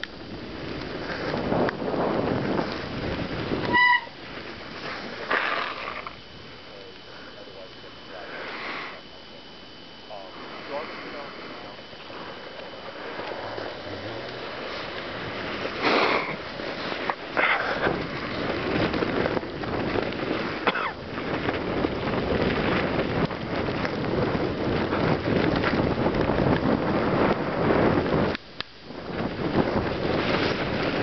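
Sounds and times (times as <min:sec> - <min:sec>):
wind buffeting microphone: 0:00.0 - 0:31.0.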